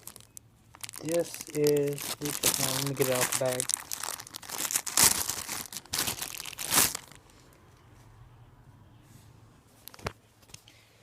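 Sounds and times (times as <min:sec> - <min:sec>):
plastic bag crinkling: 0:00.0 - 0:07.3.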